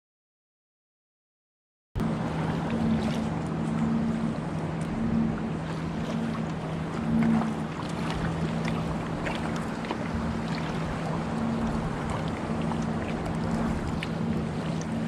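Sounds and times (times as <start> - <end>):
paddle splashes and drips: 2.0 - 15.0
steady low hum: 2.0 - 15.0
lapping water: 4.8 - 15.0.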